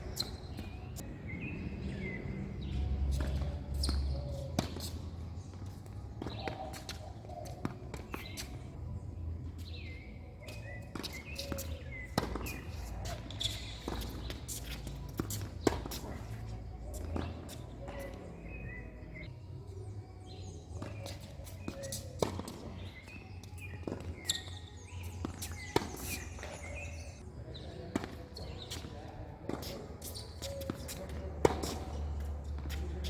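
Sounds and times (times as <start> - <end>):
tennis ball bouncing on court: 0.0 - 8.6, 9.8 - 18.6, 20.8 - 27.0, 29.5 - 33.0
tennis ball struck by rackets: 0.1 - 8.6, 9.8 - 18.6, 25.2 - 27.0, 29.5 - 33.0.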